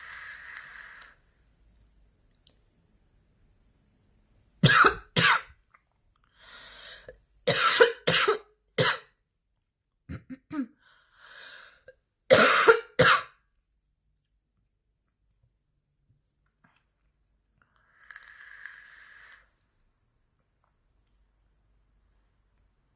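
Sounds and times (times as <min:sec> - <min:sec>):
woman coughing: 0:04.6 - 0:05.5, 0:07.5 - 0:09.1, 0:12.3 - 0:13.4.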